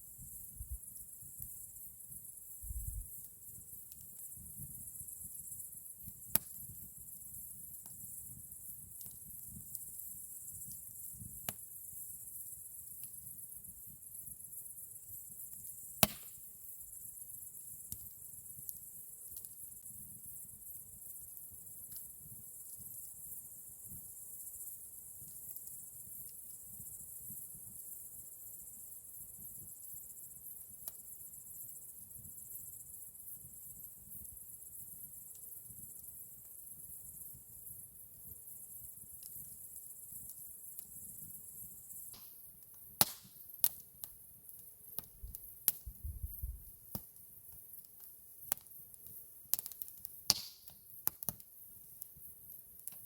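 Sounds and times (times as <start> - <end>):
crickets chirping: 0.0 - 53.0
campfire crackling: 0.2 - 27.8, 37.9 - 53.0
fire popping: 16.0 - 16.4, 41.9 - 53.0.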